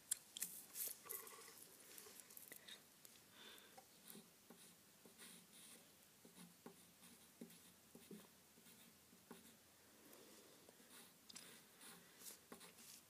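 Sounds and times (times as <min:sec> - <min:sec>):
pencil scratching on paper: 0:04.0 - 0:09.6, 0:10.8 - 0:13.0.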